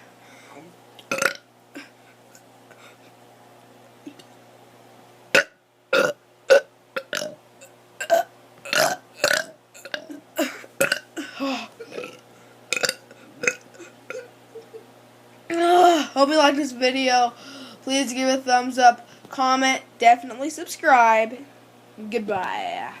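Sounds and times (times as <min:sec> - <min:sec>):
child burping: 0:01.1 - 0:01.9, 0:05.4 - 0:07.4, 0:08.0 - 0:14.3.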